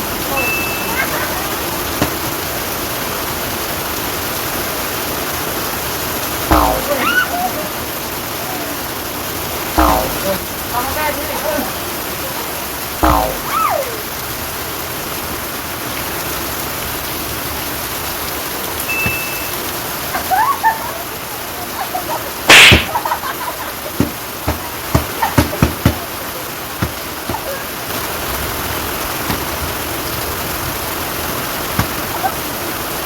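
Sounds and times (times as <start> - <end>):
steady rain-like hiss: 0.0 - 33.0
loud sudden sharp sound: 6.5 - 7.2, 9.8 - 10.6, 13.0 - 13.6, 22.5 - 23.0.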